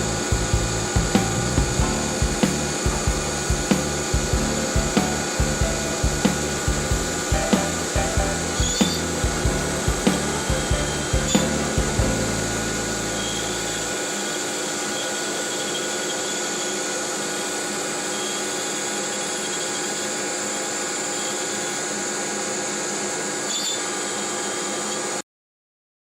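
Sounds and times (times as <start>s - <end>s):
low rumble: 0.0s - 14.0s
dust extraction rushing: 0.0s - 14.7s
router spindle whine: 2.0s - 25.2s.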